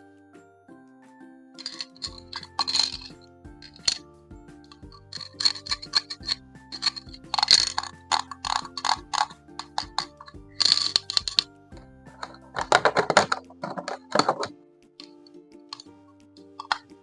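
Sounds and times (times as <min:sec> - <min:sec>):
background music: 0:00.0 - 0:17.0
plastic packaging crinkling: 0:05.0 - 0:11.4.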